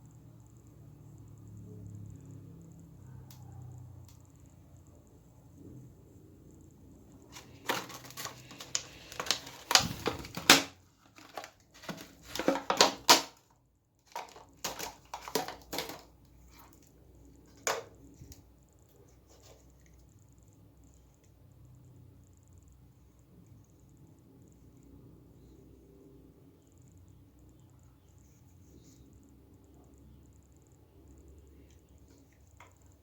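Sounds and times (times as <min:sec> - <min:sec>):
packaging crinkling and rustling: 0:07.3 - 0:16.9.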